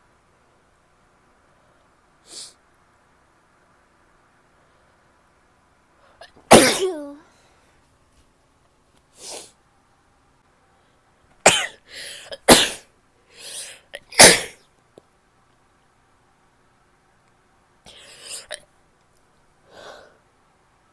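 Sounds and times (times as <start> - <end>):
woman sneezing: 6.5 - 7.2, 12.4 - 12.8, 14.2 - 14.6
quick inhales: 11.9 - 12.3, 13.3 - 13.9.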